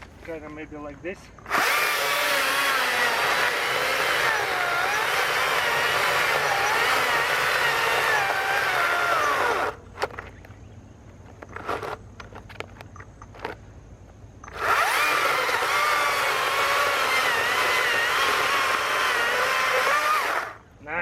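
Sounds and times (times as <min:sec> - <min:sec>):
electric chainsaw cutting log: 0:01.4 - 0:09.8, 0:14.4 - 0:20.6.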